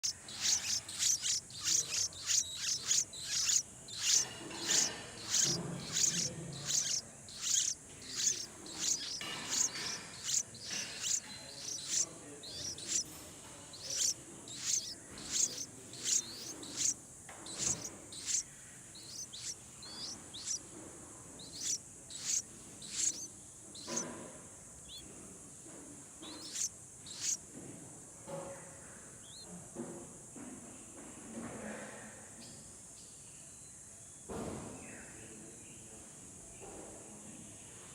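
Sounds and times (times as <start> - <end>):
baby bird chirping: 0.0 - 20.7, 21.4 - 24.2, 24.8 - 25.1, 26.2 - 27.4, 29.2 - 29.5.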